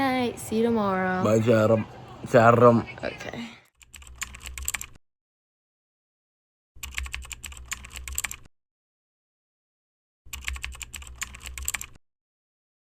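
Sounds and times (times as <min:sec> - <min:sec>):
keyboard typing clicks: 0:03.9 - 0:04.9, 0:06.8 - 0:08.5, 0:10.3 - 0:12.0.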